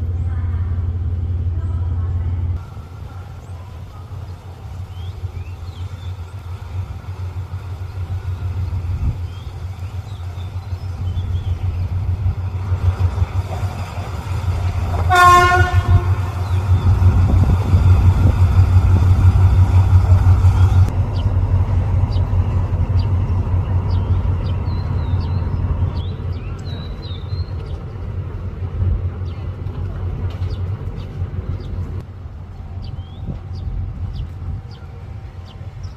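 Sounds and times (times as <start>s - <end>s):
locomotive engine rumbling: 0.0s - 35.9s
locomotive horn toot: 15.0s - 16.4s.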